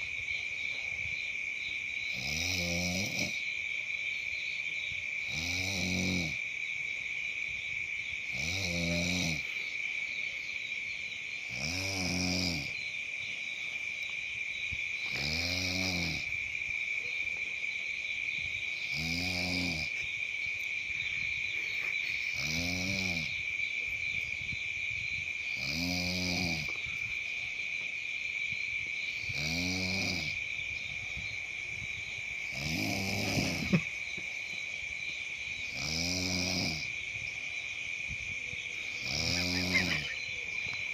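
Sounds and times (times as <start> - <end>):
person snoring: 2.1 - 3.4, 5.3 - 6.4, 8.3 - 9.5, 11.5 - 12.8, 15.1 - 16.3, 18.8 - 19.9, 22.2 - 23.3, 25.6 - 26.8, 29.3 - 30.4, 32.5 - 33.9, 35.7 - 36.9.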